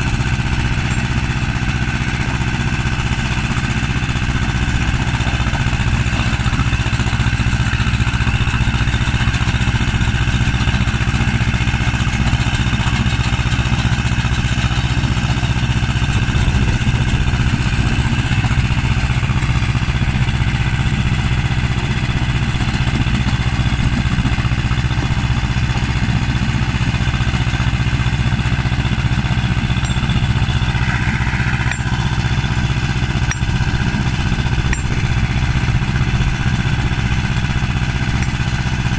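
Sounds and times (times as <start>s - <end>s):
tractor engine running: 0.0s - 38.9s
stone-crushing machine: 29.5s - 35.1s.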